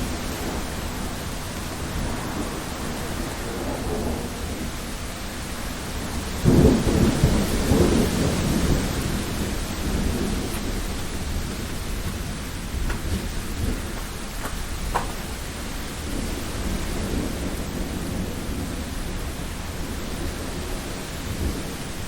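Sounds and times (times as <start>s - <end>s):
steady rain: 0.0s - 22.0s
thunder clap rumbling: 0.0s - 22.0s.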